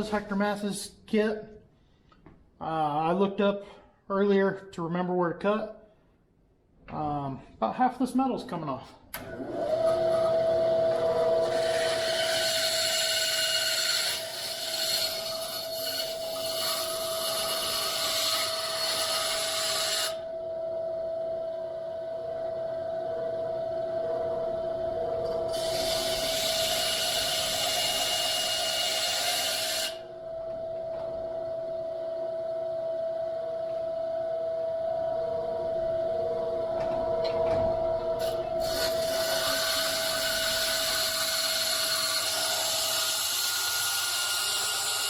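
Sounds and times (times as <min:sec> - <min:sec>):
bandsaw humming: 0:09.2 - 0:20.4, 0:23.9 - 0:30.6, 0:35.6 - 0:45.0
saw rasping through metal: 0:11.3 - 0:20.3, 0:25.5 - 0:30.1, 0:38.2 - 0:45.0.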